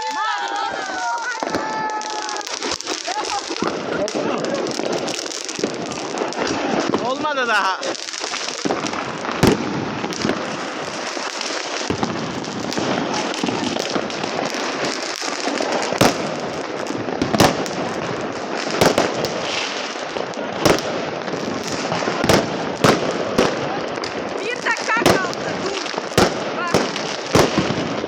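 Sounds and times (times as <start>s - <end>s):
fireworks bangs: 0.0s - 28.0s
fireworks crackling: 0.0s - 28.0s.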